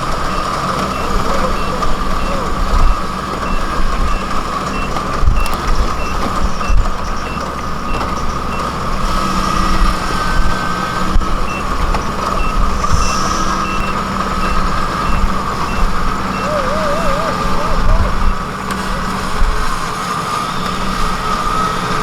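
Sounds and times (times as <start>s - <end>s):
warning alarm beeping: 0.0s - 9.6s, 11.4s - 18.5s
combine harvester engine running: 0.0s - 22.0s.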